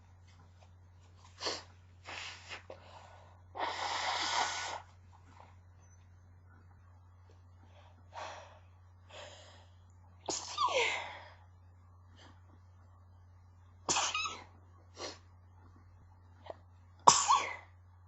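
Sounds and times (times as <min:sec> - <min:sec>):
woman's stifled sneezes: 0:10.3 - 0:11.1, 0:13.9 - 0:14.5.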